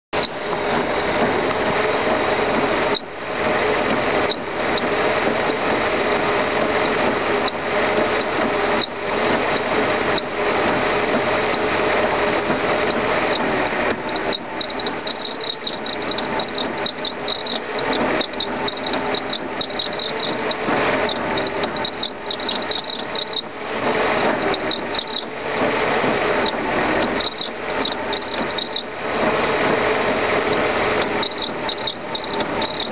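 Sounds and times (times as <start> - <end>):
car engine running: 0.1 - 32.9
high-pitched ratcheting chatter: 12.3 - 29.3, 30.0 - 32.9.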